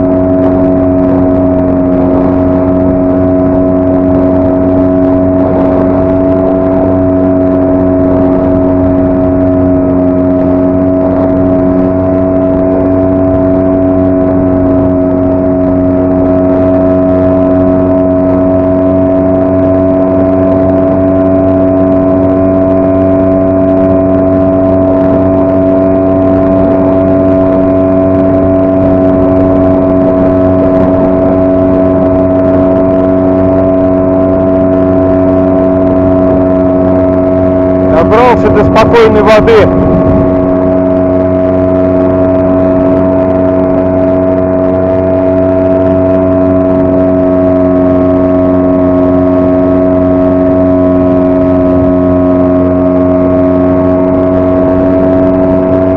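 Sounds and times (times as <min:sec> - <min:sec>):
outboard motor running: 0:00.0 - 0:55.9.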